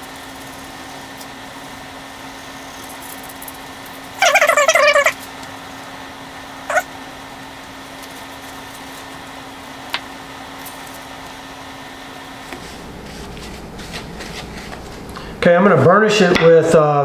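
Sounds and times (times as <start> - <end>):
rising animal call: 4.2 - 5.2
steady low hum: 10.8 - 17.0.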